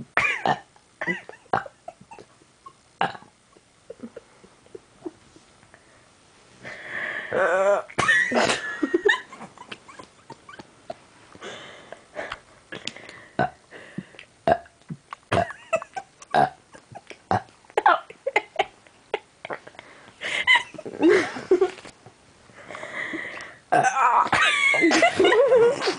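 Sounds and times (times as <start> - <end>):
person burping: 0.2 - 1.8, 3.0 - 3.4, 7.3 - 8.7, 12.8 - 13.6, 14.4 - 14.7, 15.3 - 15.6, 16.3 - 16.6, 17.3 - 18.0, 23.7 - 24.4.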